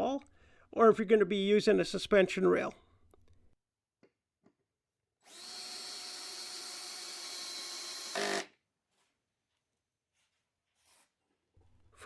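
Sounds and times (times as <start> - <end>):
cordless drill driving a screw: 5.2 - 8.5.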